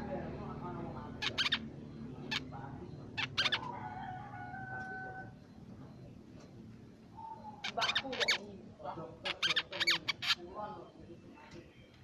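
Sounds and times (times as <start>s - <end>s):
bird high chirps: 1.0s - 3.9s, 7.1s - 8.5s, 9.2s - 10.5s.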